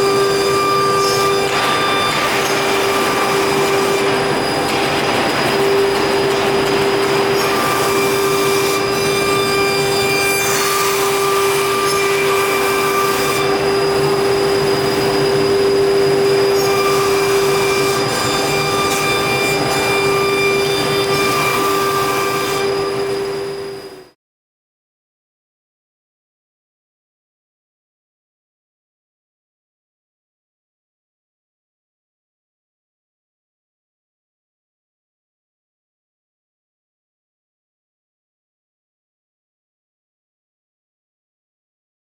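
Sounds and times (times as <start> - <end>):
rushing cutting noise: 0.0 - 23.0
router spindle whine: 0.0 - 24.2.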